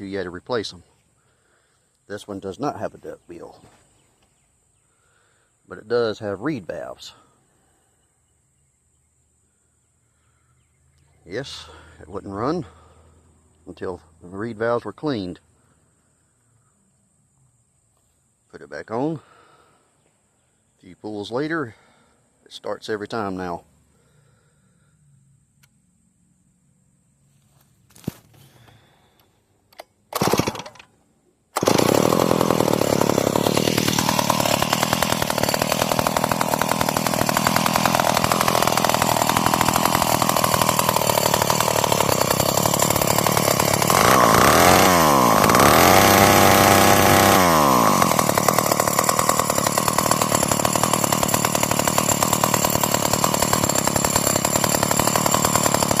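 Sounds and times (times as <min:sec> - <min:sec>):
chainsaw pull-start: 0:29.8 - 0:31.0, 0:31.6 - 0:56.0
chainsaw engine running and revving: 0:31.6 - 0:56.0.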